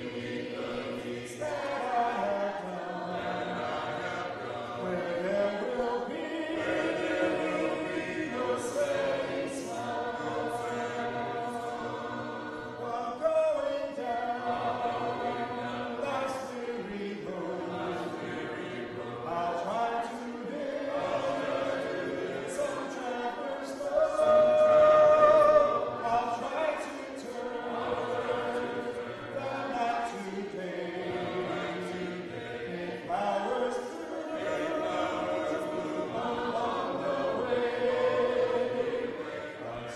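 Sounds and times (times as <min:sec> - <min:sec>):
congregation singing a hymn: 0:00.0 - 0:39.9.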